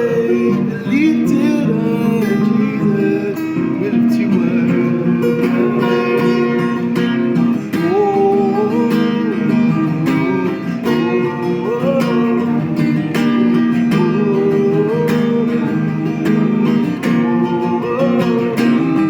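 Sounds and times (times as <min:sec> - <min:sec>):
acoustic guitar strumming: 0:00.0 - 0:19.0
person singing wordless melody: 0:00.0 - 0:19.0.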